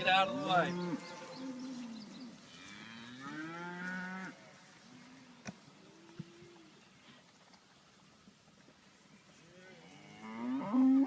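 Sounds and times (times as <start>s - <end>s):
cattle mooing: 0.0s - 4.4s, 9.6s - 11.0s.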